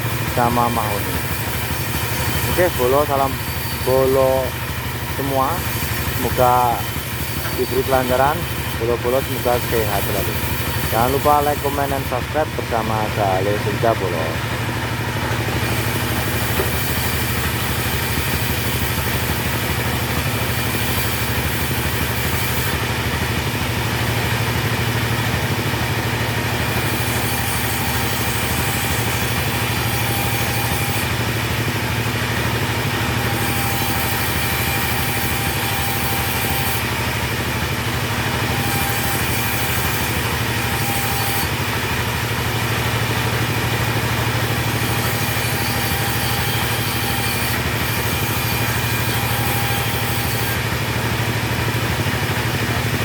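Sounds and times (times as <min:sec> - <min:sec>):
chainsaw engine running: 0:00.0 - 0:53.0.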